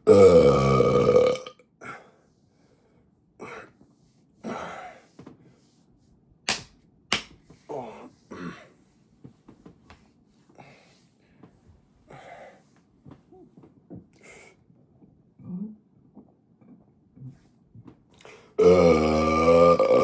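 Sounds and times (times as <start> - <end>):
soda belches: 0.1 - 1.6, 18.6 - 20.0
sharp smacks: 6.5 - 7.4
man breathing softly: 10.4 - 11.5, 12.1 - 12.8.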